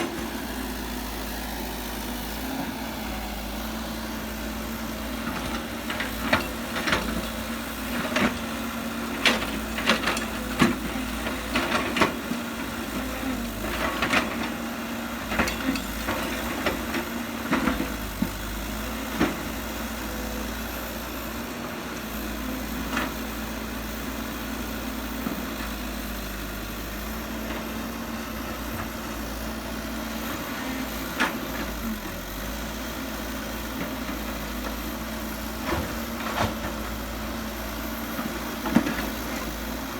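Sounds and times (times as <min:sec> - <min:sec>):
diesel engine humming: 0:00.0 - 0:11.8.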